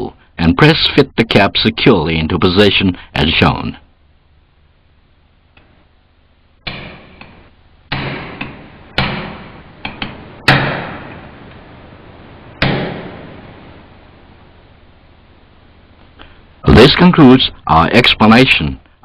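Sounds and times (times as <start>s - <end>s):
hammer striking metal tool: 7.9s - 11.2s.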